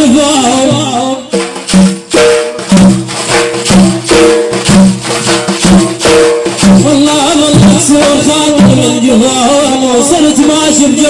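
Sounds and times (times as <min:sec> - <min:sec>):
instrumental music with percussion: 0:00.0 - 0:11.0.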